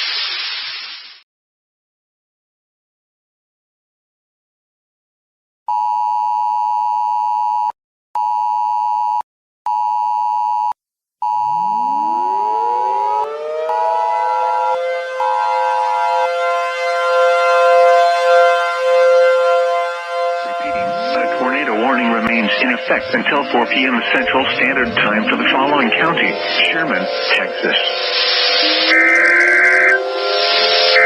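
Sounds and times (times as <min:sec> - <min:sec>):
electronic alert tone beeps: 0:11.2 - 0:13.9, 0:24.5 - 0:31.0
two-tone warning siren: 0:11.2 - 0:31.0.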